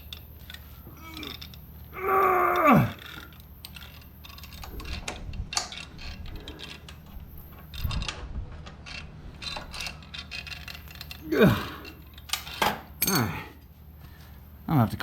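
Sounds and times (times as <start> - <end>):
strained groan: 0.7 - 5.1, 10.3 - 12.2, 13.0 - 13.6
hand tools clinking on metal: 9.4 - 13.6.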